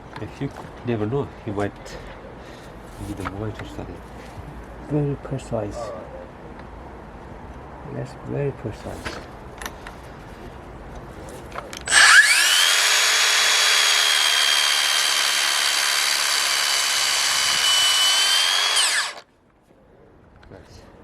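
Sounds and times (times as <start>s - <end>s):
mitre saw motor whining: 11.8s - 19.2s.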